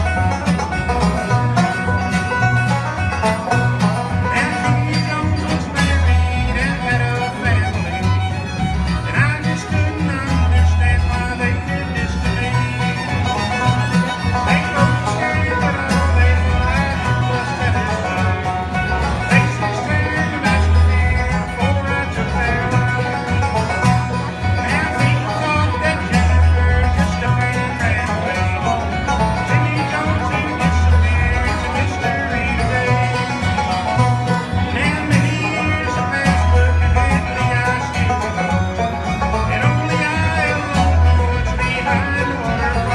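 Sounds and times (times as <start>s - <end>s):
banjo: 0.0s - 42.9s
bluegrass band playing: 0.0s - 42.9s
fiddle: 0.0s - 42.9s
pulsing bass line: 0.0s - 42.9s.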